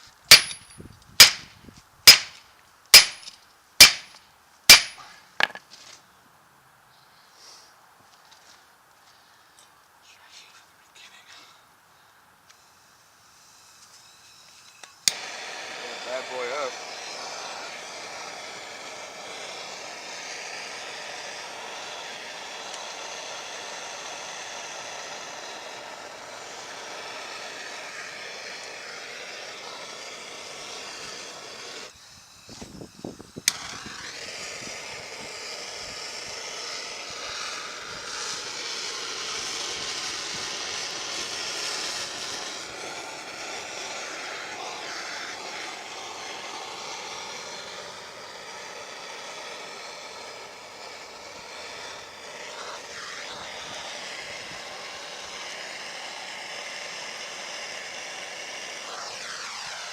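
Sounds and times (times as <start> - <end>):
machine drone with high whine: 42.0 - 59.9.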